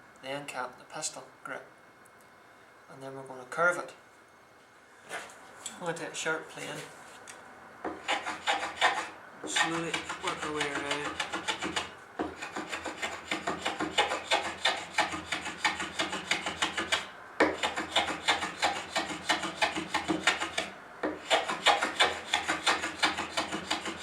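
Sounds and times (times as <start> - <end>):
hand plane rasping on wood: 7.9 - 24.0.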